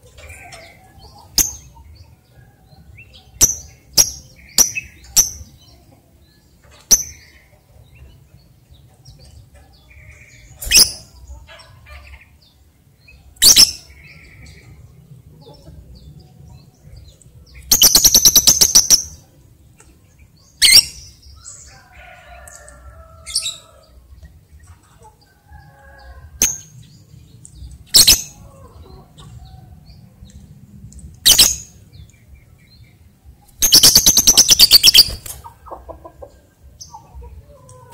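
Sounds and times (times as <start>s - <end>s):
lovebird chattering trill: 17.8s - 19.2s, 33.6s - 35.2s
lovebird shrill calls: 33.6s - 35.2s.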